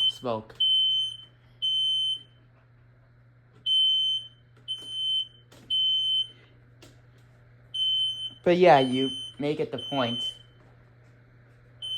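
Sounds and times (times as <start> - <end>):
smoke alarm beeping: 0.0 - 2.4, 3.6 - 6.5, 7.7 - 10.6.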